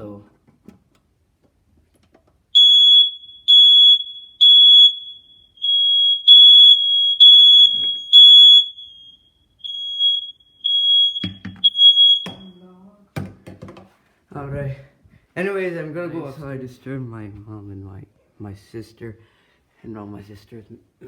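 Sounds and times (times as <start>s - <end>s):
smoke alarm high-pitched beeps: 2.6s - 12.7s
thumps: 11.2s - 12.5s.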